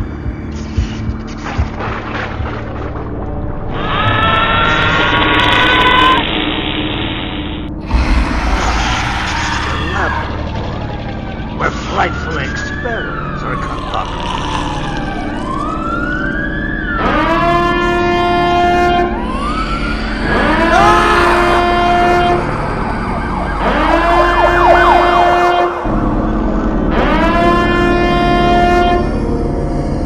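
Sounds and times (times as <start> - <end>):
long horn blasts: 7.8 - 11.0, 16.9 - 29.6
emergency siren wailing: 7.8 - 30.0.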